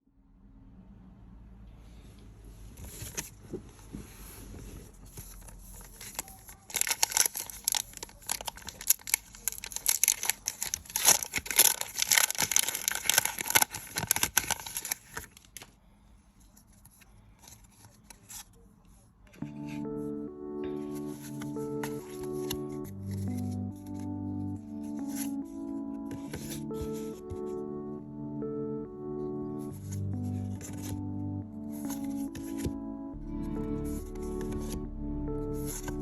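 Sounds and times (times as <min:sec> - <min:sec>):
foil wrapper rustling: 0:05.3 - 0:15.7
foil wrapper tearing and crackling: 0:05.9 - 0:15.6.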